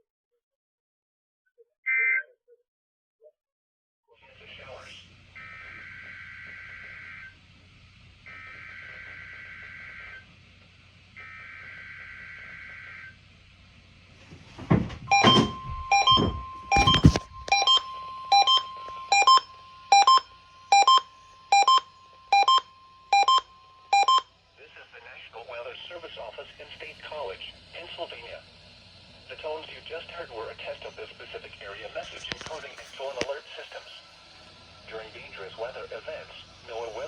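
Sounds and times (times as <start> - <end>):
steady warning alarm tone: 5.3 - 10.3, 11.1 - 13.4, 14.4 - 24.6, 33.6 - 37.0
sharp repeating beep: 15.1 - 24.3
warbling digital data tones: 15.1 - 24.3.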